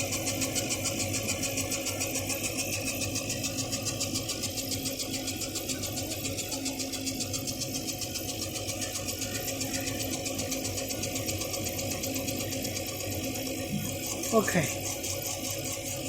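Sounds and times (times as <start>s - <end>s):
steady machine hum: 0.0s - 16.0s.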